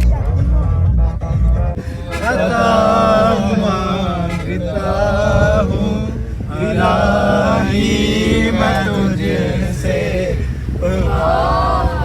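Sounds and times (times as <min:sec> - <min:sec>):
steady low drone: 0:00.0 - 0:12.0
man chanting: 0:01.8 - 0:10.0.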